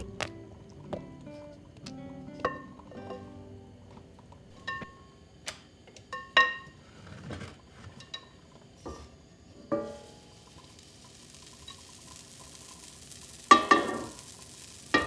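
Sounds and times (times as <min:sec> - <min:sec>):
dishes clinking: 0:01.8 - 0:05.1, 0:06.0 - 0:10.1.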